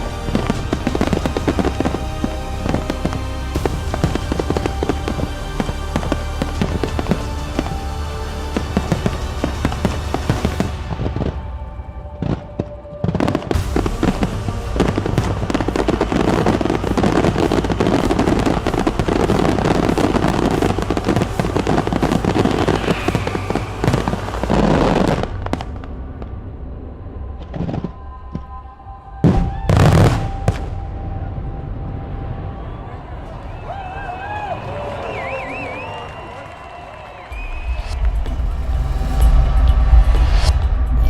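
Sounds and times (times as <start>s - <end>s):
fireworks crackling and banging: 0.0s - 26.4s
firework booms: 13.0s - 26.3s.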